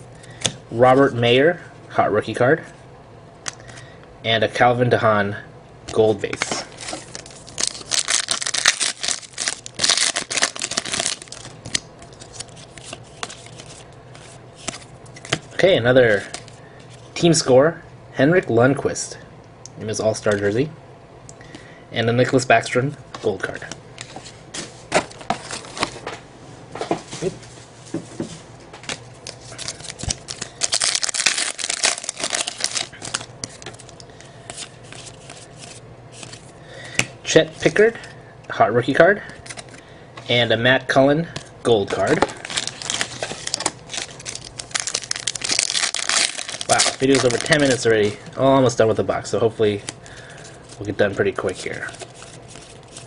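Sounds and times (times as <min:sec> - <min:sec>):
card wrapper crinkling and tearing: 0:06.7 - 0:15.4, 0:29.2 - 0:36.5, 0:41.8 - 0:48.2, 0:49.8 - 0:53.0.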